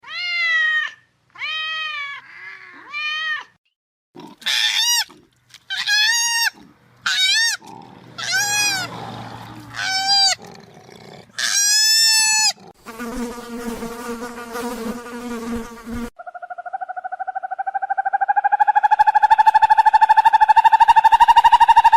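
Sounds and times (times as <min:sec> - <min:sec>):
cat meowing: 0:00.0 - 0:03.6, 0:08.2 - 0:10.4.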